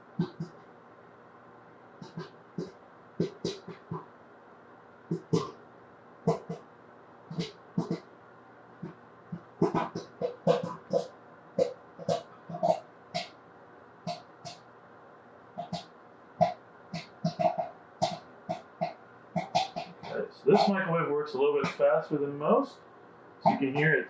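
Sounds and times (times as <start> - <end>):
popcorn popping: 2.0 - 4.0, 5.1 - 5.6, 8.8 - 13.3, 16.4 - 20.7.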